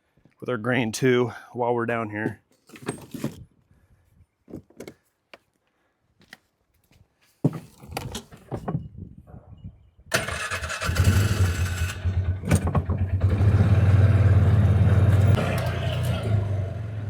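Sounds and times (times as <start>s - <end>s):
vehicle engine starting and idling: 10.1s - 17.0s
knocks and clatter: 12.3s - 13.5s.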